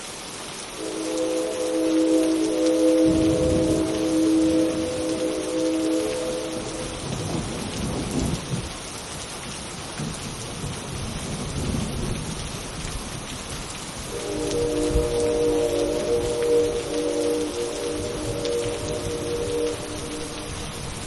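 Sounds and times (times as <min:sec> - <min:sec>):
steady rain: 0:00.0 - 0:21.0
synthesized train horn chord: 0:00.8 - 0:08.1, 0:14.1 - 0:21.0
thunder rolling: 0:02.4 - 0:08.7, 0:14.1 - 0:21.0.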